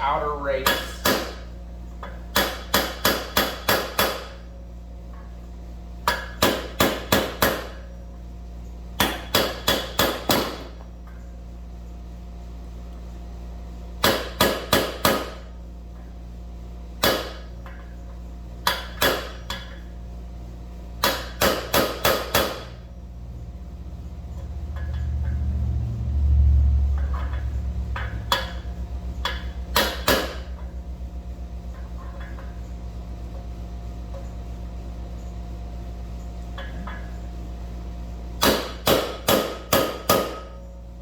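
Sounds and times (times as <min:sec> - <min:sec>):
hammer striking metal: 0:00.6 - 0:01.4, 0:02.3 - 0:04.4, 0:09.0 - 0:10.7, 0:14.0 - 0:15.4, 0:17.0 - 0:17.5, 0:18.7 - 0:19.7, 0:21.0 - 0:22.8, 0:27.0 - 0:30.6, 0:38.4 - 0:40.6
low rumble: 0:25.0 - 0:29.8.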